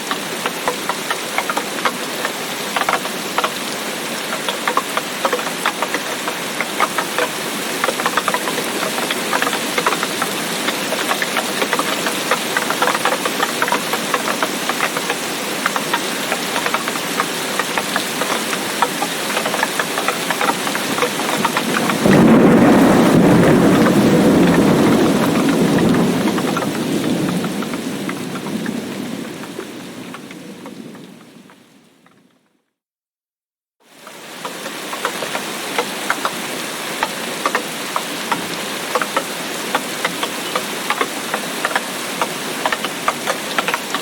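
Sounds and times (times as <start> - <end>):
heavy rain falling: 0.0 - 32.2, 33.8 - 44.0
thunderclap rumbling: 20.3 - 31.6.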